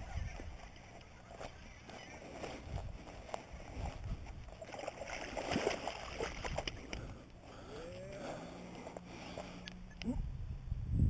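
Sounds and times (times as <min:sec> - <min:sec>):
water splashing: 0:00.0 - 0:08.6.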